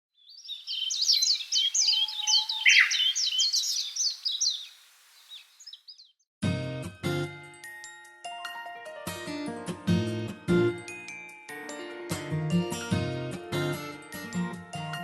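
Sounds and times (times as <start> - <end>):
songbirds chirping and trilling: 0.1 - 6.2
chiming music: 7.1 - 9.7, 10.5 - 15.0.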